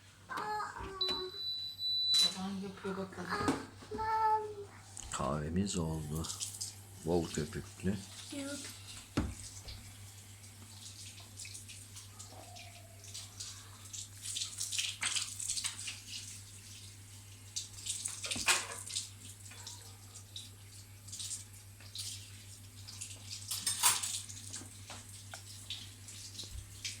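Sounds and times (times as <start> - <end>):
steady low hum: 2.6 - 10.6
water splashing and trickling: 5.1 - 27.0.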